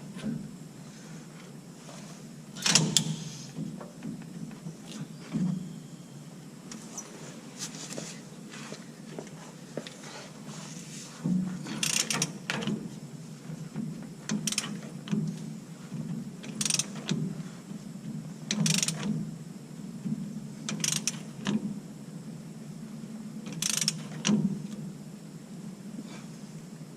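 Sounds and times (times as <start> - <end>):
ratchet wrench clicking: 11.8 - 12.4, 14.3 - 14.8, 16.5 - 17.0, 18.5 - 19.1, 20.7 - 21.2, 23.5 - 24.0.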